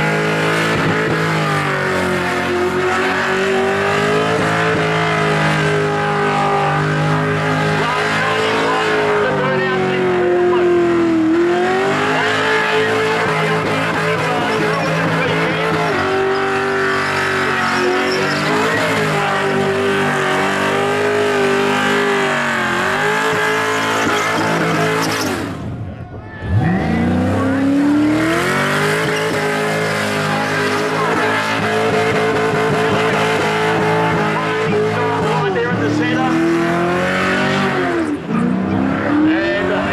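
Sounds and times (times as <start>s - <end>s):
car engine at high revs: 0.0s - 39.9s
tyre squeal: 14.1s - 25.5s, 28.5s - 35.2s.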